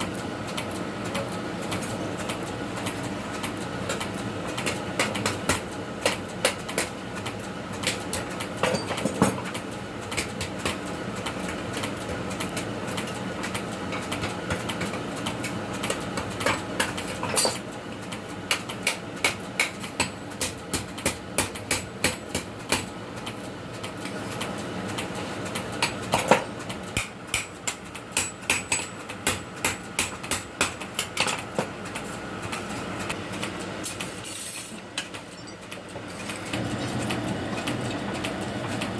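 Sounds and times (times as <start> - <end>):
hammer striking steel on anvil: 28.2 - 30.7.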